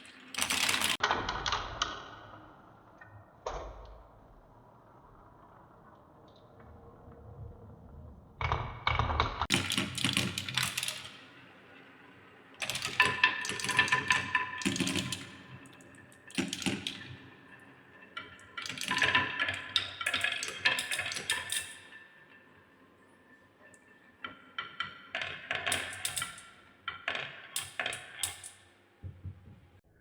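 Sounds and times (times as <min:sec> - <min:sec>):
balls clattering down marble run: 0:00.0 - 0:01.4, 0:08.9 - 0:22.6, 0:23.7 - 0:28.8.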